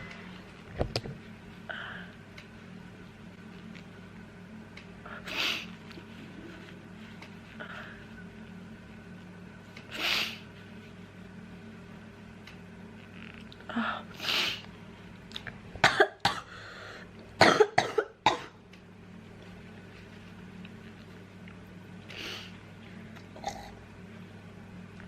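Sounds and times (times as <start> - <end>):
person coughing: 15.8 - 16.5, 17.4 - 18.6
person breathing in noisily: 16.5 - 17.1.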